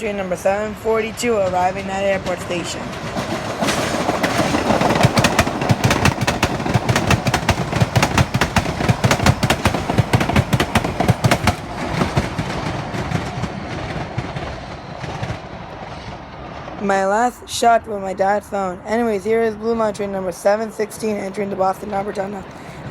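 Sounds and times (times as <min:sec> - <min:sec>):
train wheels clicking over rail joints: 0:00.0 - 0:15.7
train rumble: 0:00.0 - 0:22.9.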